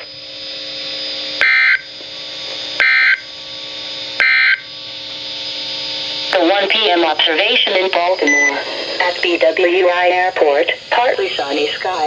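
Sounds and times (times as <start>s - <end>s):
steady radio hiss: 0.0s - 12.0s
digital data screech: 1.4s - 1.8s, 2.8s - 3.2s, 4.2s - 4.6s.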